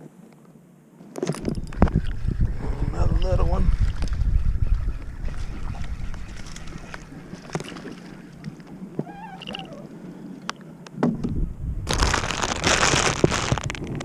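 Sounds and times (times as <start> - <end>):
water splashing around boat: 1.0 - 11.3
wavering chirp-like call: 9.0 - 10.5.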